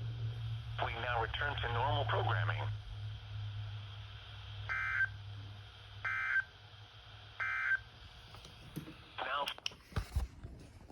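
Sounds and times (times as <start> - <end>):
low hum: 0.0 - 7.4.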